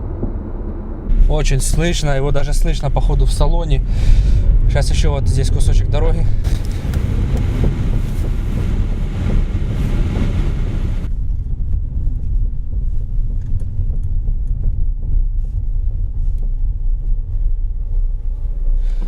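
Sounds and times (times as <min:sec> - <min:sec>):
road and tyre rumble: 0:00.0 - 0:19.0
wind hiss: 0:01.1 - 0:12.1.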